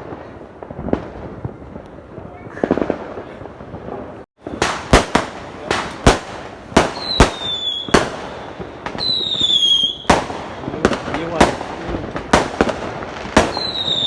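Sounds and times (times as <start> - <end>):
fireworks bangs: 0.0 - 14.0
whistling firework shells: 4.4 - 11.4, 12.4 - 14.0.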